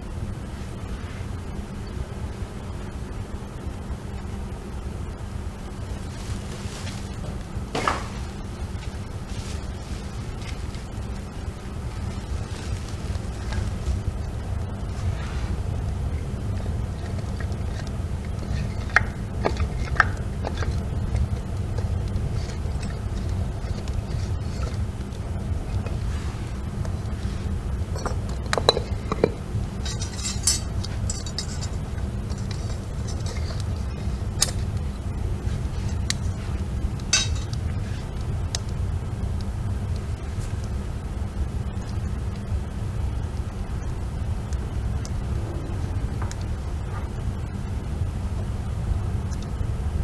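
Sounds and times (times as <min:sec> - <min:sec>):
hard objects clinking: 0:16.0 - 0:37.7.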